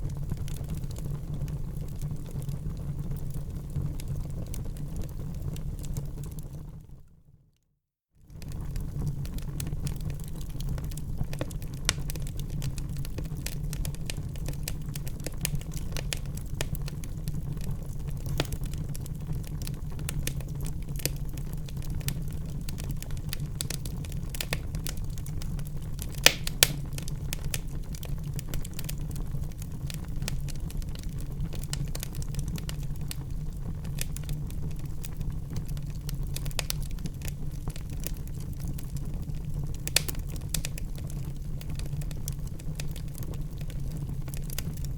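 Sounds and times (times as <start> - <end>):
wood fire crackling: 0.0 - 6.8, 8.3 - 44.9
fire popping loudly: 18.0 - 30.5.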